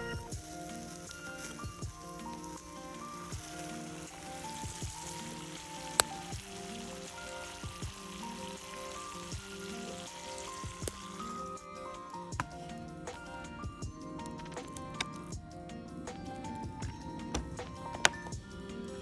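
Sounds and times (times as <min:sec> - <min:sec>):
background music melody: 0:00.0 - 0:19.0
fire crackling: 0:00.0 - 0:19.0
shellfish sizzling: 0:00.0 - 0:19.0.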